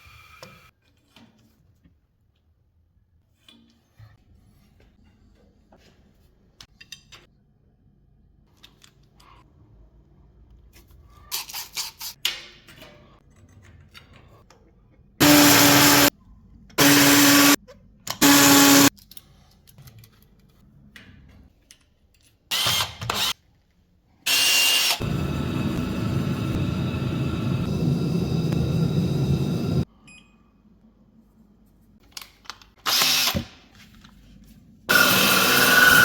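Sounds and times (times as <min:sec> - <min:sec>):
power tool running: 0:15.2 - 0:16.1, 0:16.8 - 0:17.6, 0:18.2 - 0:18.9, 0:24.3 - 0:29.8, 0:34.9 - 0:36.0.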